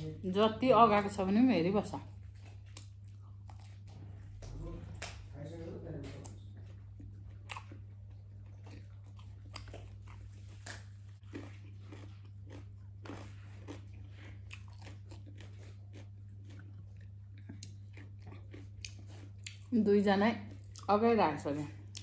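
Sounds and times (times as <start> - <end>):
person chewing crunchy food: 2.1 - 5.3, 6.2 - 19.8, 20.4 - 20.9, 21.8 - 22.0.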